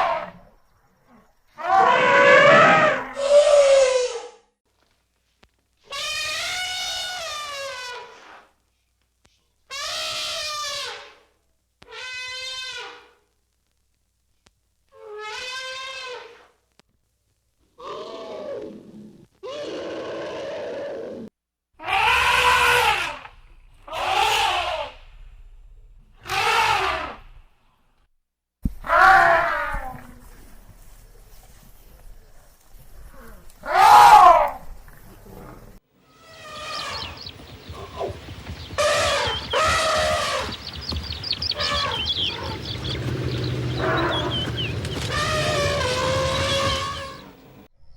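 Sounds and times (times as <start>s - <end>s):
elephant trumpeting: 1.6s - 4.3s, 5.9s - 8.4s, 9.7s - 11.2s, 11.9s - 13.1s, 15.0s - 16.5s, 21.8s - 27.4s, 28.8s - 30.4s, 33.2s - 34.7s, 36.0s - 47.5s
low rumble: 23.2s - 26.2s
high chirping calls: 36.1s - 47.6s.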